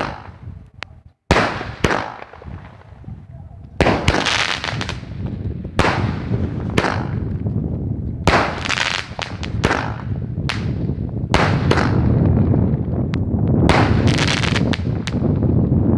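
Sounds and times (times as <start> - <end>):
fireworks crackling: 0.0 - 15.6
fireworks bangs: 0.0 - 15.8
low rumble: 4.7 - 15.9.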